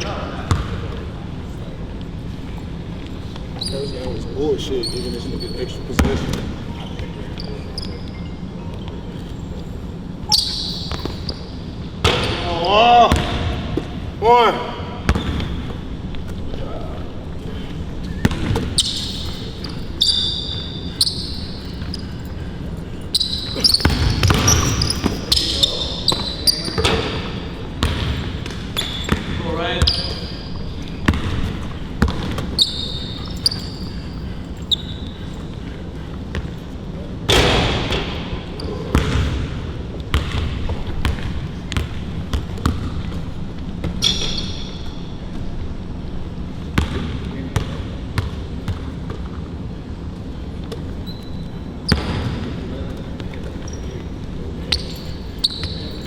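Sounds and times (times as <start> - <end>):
sneakers squeaking on floor: 0.0 - 14.0, 15.0 - 45.6, 46.7 - 56.0
basketball bouncing on a court: 0.5 - 1.0, 6.0 - 7.1, 10.3 - 13.9, 15.0 - 16.4, 18.1 - 22.6, 23.2 - 34.1, 36.0 - 36.7, 37.3 - 44.9, 46.8 - 49.4, 51.9 - 54.0.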